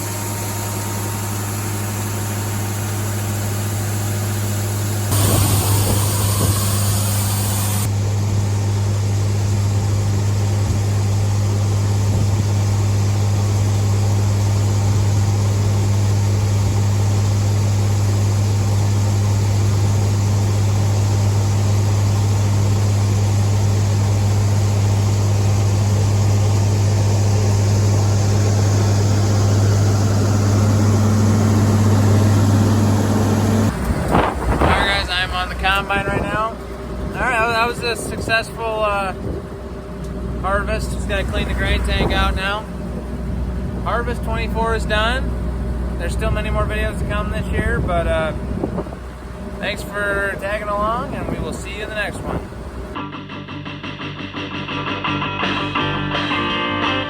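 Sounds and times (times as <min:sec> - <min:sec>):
combine harvester engine drone: 0:00.0 - 0:57.0.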